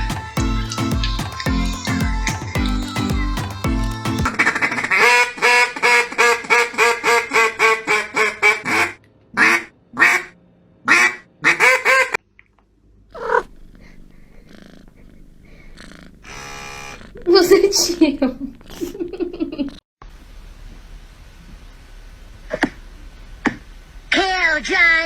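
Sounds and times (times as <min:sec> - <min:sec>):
animal calling: 0:13.1 - 0:13.5.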